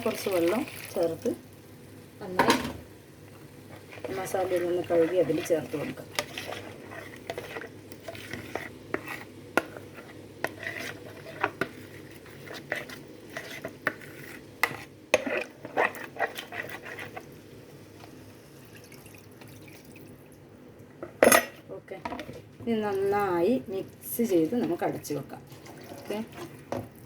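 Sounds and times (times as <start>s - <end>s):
spoon scraping cooking pot: 3.3s - 17.3s.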